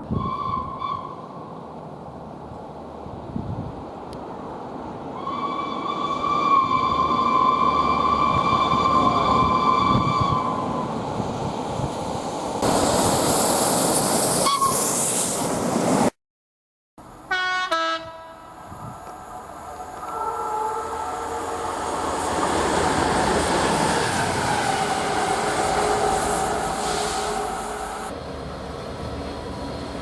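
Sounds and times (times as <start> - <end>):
passing train rumbling: 0.0 - 16.1, 17.0 - 30.0
horn two-note call: 17.3 - 18.4
train air horn: 17.3 - 18.6, 20.0 - 21.6, 24.8 - 28.1.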